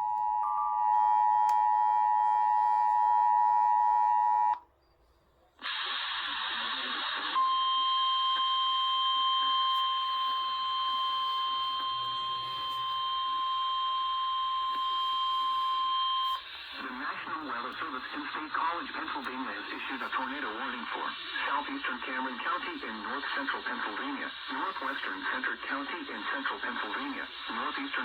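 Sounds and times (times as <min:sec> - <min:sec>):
single-tone warning alarm: 0:00.0 - 0:04.6, 0:07.4 - 0:16.4
radio static burst: 0:05.6 - 0:07.4, 0:16.4 - 0:28.0.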